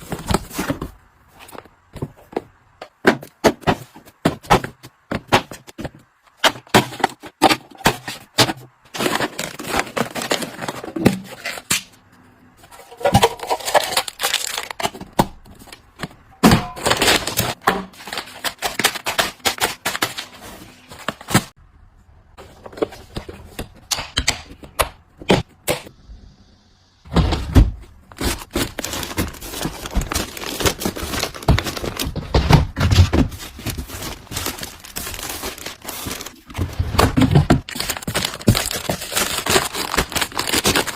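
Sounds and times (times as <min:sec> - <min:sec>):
plastic crinkling: 0:12.8 - 0:14.9, 0:28.1 - 0:40.9.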